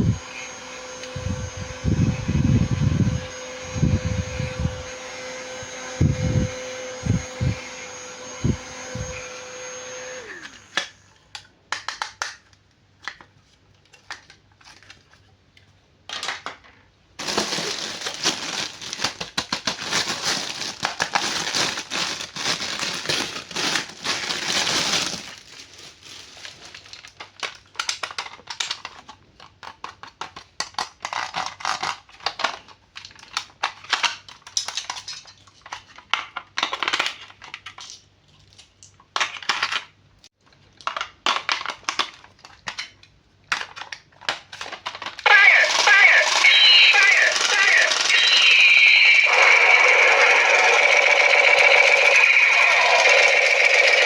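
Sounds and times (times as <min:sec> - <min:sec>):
small motor whirring: 0:00.0 - 0:10.8, 0:45.3 - 0:54.0
crinkling: 0:17.2 - 0:30.5.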